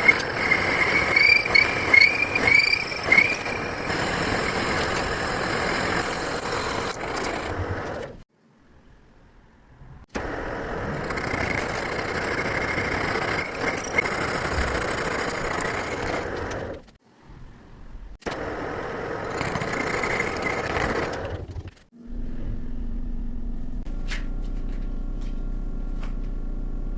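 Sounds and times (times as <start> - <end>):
harsh metal cutting noise: 0.0 - 8.2, 10.2 - 16.9, 18.2 - 21.9
steady machine hum: 18.3 - 26.9.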